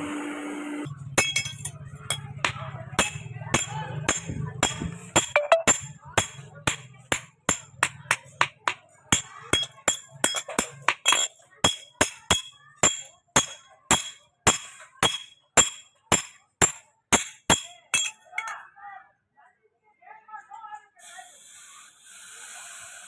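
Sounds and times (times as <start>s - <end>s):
hammer striking metal on anvil: 1.2s - 18.5s.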